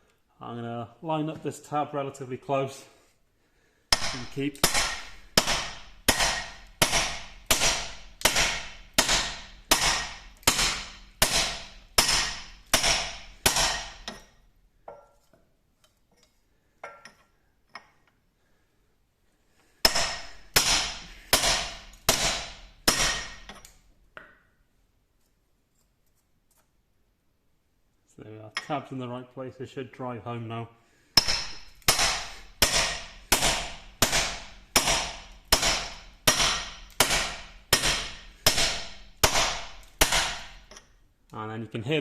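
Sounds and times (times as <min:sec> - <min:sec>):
hammer blows ringing on metal: 0:03.9 - 0:14.2, 0:19.9 - 0:23.5, 0:31.2 - 0:40.6.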